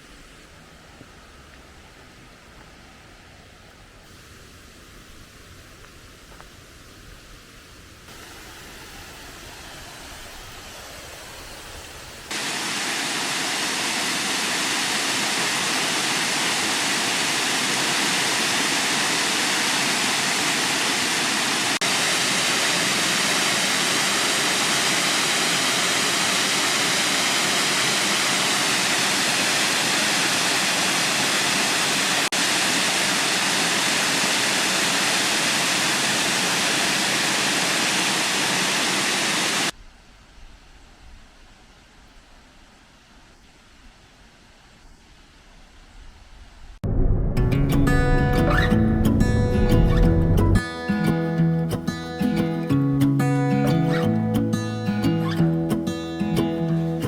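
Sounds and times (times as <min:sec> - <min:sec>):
waterfall roaring: 0:08.1 - 0:39.8, 0:47.6 - 0:57.0.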